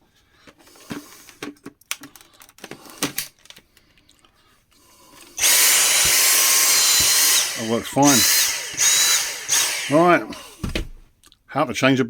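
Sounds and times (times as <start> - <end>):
vacuum cleaner clicks and knocks: 5.5 - 7.6.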